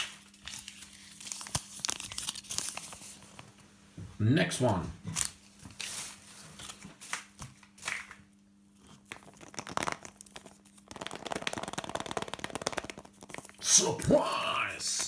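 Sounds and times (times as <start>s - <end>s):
foil wrapper crinkling: 0.0s - 3.4s, 9.0s - 13.6s.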